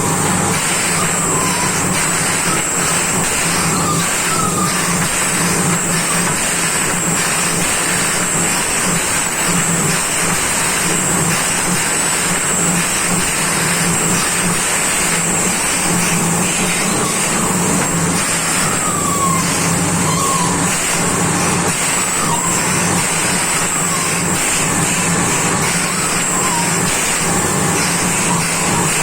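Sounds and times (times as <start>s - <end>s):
drilling rig engine hum: 0.0s - 29.0s.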